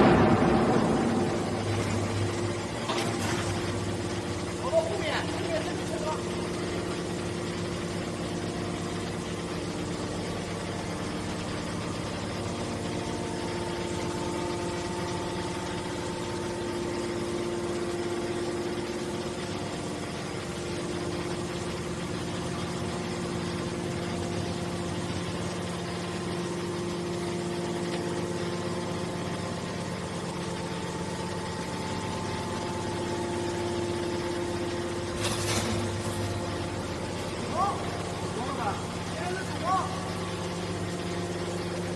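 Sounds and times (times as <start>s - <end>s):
hydraulic power unit humming: 0.0s - 41.9s.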